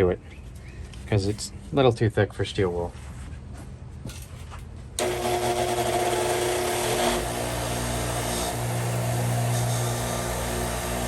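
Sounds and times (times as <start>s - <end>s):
motorised wire wheel scrubbing metal: 5.0s - 11.0s.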